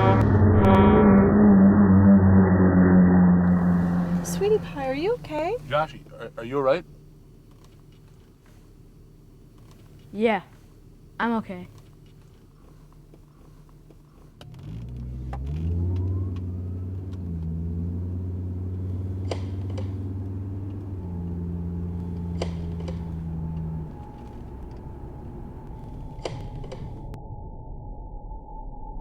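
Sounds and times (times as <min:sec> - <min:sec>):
car engine starting and running: 0:00.0 - 0:27.2
sharp clicks: 0:19.2 - 0:20.0.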